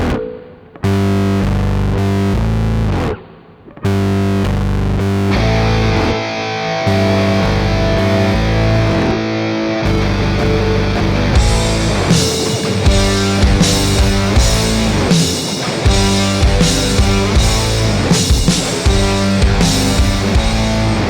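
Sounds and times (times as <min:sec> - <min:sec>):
distorted electric guitar chords: 0:00.0 - 0:21.0.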